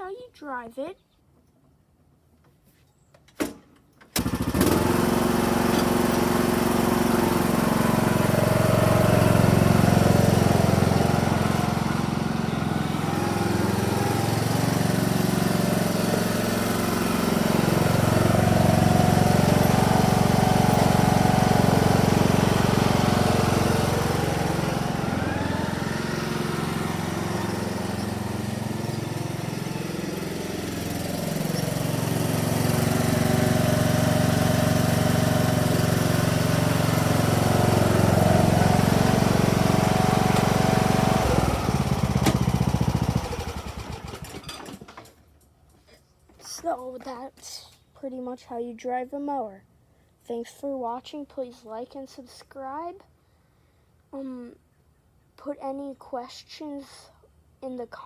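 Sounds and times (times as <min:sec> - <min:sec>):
riding lawnmower engine running: 0:04.1 - 0:45.2.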